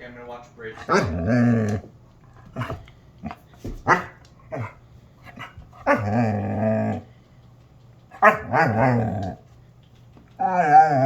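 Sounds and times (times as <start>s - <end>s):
dog barking and howling: 0.8s - 1.9s, 3.8s - 7.1s, 8.1s - 9.4s, 10.4s - 11.0s.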